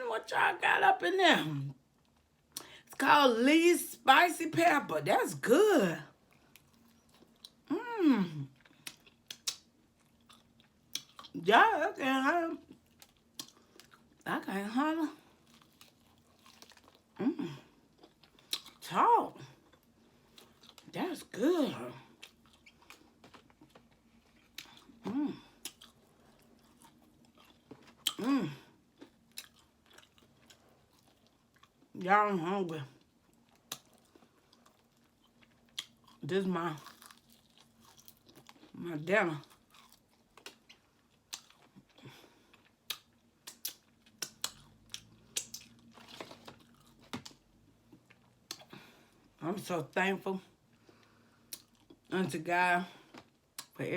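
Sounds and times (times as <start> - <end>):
chewing and biting food: 6.2 - 7.7, 8.4 - 11.4, 12.6 - 14.2, 15.3 - 18.8, 19.6 - 20.9, 22.1 - 31.9, 33.0 - 38.8, 39.4 - 48.8, 50.9 - 52.1
wet mouth clicks: 8.8 - 9.7, 42.9 - 45.8.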